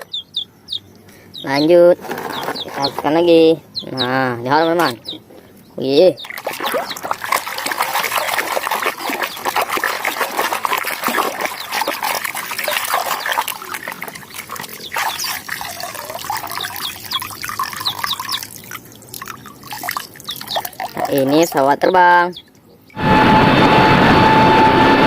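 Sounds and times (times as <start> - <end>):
water splashing and trickling: 5.8 - 23.0
small splashes and clatters: 6.2 - 21.8.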